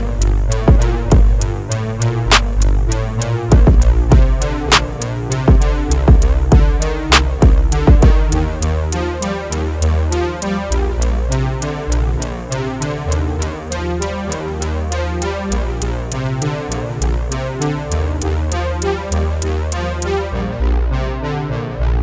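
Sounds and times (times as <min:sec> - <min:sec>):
drum-machine beat: 0:00.0 - 0:08.7, 0:16.7 - 0:18.6
synthesizer bass line: 0:00.0 - 0:22.0.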